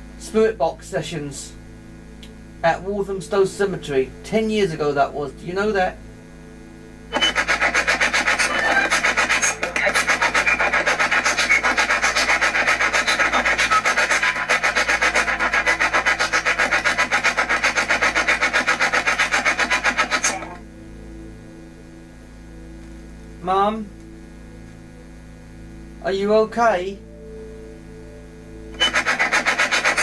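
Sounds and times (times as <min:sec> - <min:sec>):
radio static and broken fragments: 0:07.2 - 0:20.6.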